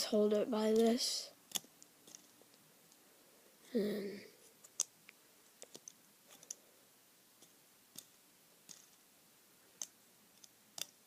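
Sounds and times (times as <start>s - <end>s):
plastic toy bricks clicking: 1.5s - 2.4s, 5.6s - 6.6s, 7.4s - 9.0s, 9.8s - 11.0s.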